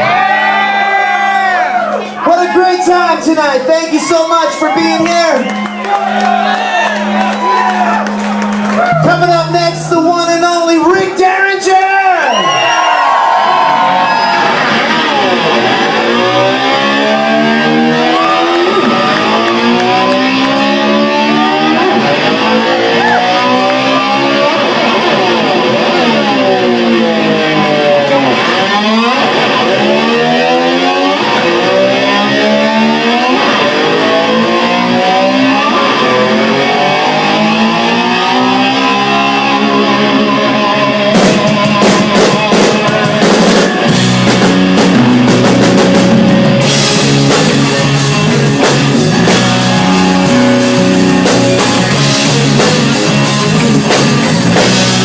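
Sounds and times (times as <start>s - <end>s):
electric slide guitar swooping: 0.0s - 11.7s, 12.4s - 55.0s
sharp drum hits: 41.2s - 43.8s.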